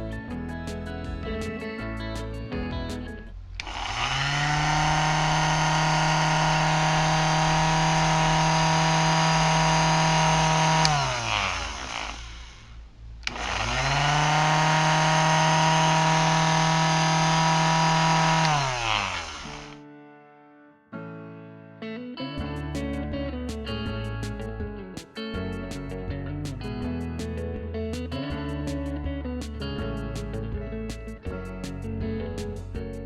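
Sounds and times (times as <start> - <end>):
drill motor whining: 3.6 - 19.8.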